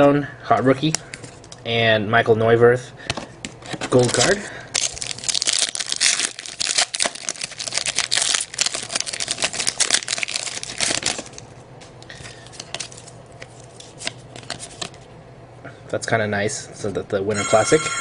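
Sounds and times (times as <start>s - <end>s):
wrapper crinkling and tearing: 3.9s - 11.5s, 12.2s - 15.0s.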